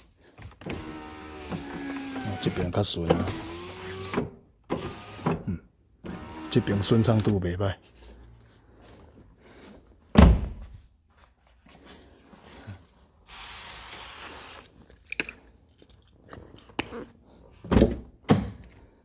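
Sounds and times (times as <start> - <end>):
heavy thunks: 10.1 - 10.8
aerosol spray can hissing: 13.3 - 14.7.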